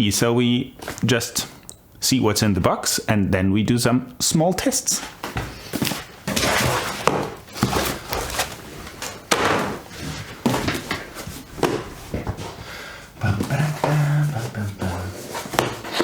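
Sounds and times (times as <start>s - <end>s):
cardboard scraping and rustling: 5.2s - 12.6s, 13.2s - 16.0s.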